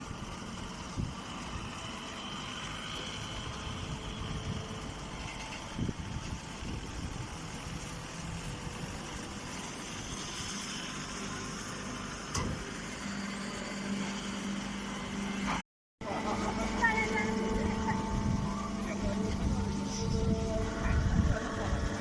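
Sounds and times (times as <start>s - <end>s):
baler machine drone: 0.0s - 22.0s
low hum: 12.3s - 22.0s.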